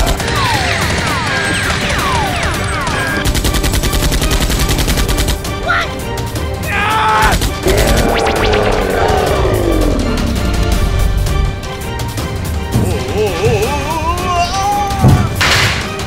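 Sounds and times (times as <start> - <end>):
rapid automatic gunfire: 0.0 - 5.5
background music: 0.0 - 16.0.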